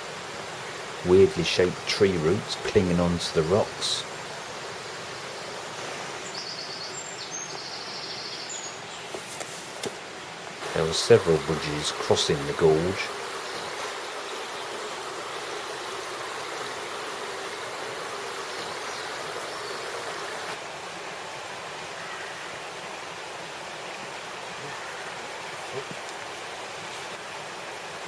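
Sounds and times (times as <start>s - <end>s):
river rushing over rocks: 9.7s - 28.0s.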